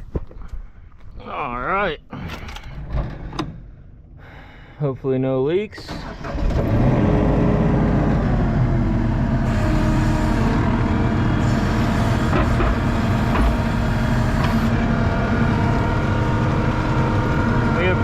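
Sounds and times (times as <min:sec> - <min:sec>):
diesel engine starting and running: 0:05.5 - 0:18.0.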